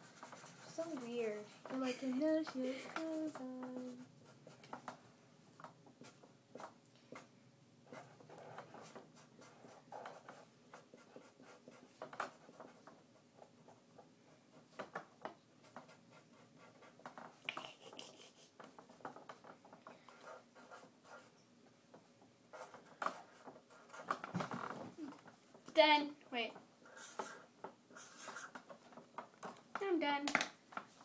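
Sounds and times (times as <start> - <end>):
drawing tool scratching on paper: 0.0 - 4.9, 26.9 - 28.8.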